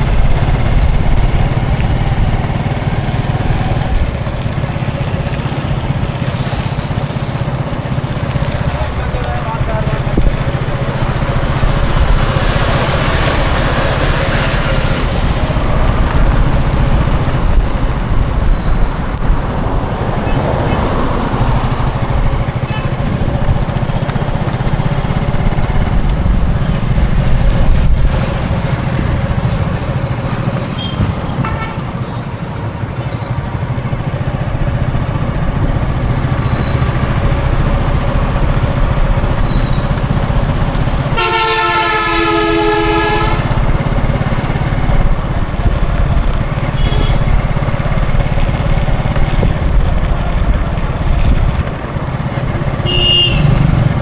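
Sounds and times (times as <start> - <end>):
heavy road traffic rumble: 0.0 - 54.0
thin high squeal: 11.5 - 15.6.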